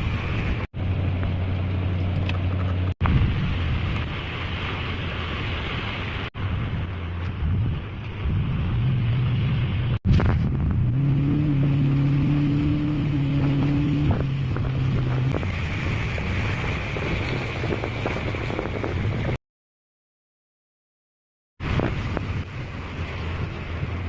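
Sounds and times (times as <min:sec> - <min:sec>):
low engine hum: 0:00.0 - 0:19.4, 0:21.6 - 0:24.0
wind buffeting microphone: 0:03.0 - 0:19.4, 0:21.6 - 0:24.0.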